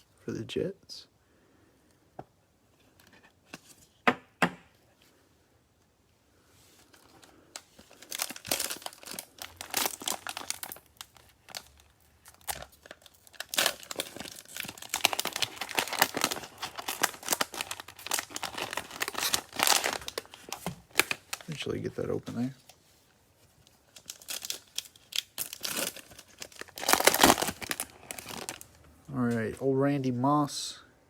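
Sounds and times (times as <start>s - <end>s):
wrapper crinkling and tearing: 6.9s - 22.8s, 23.6s - 28.8s.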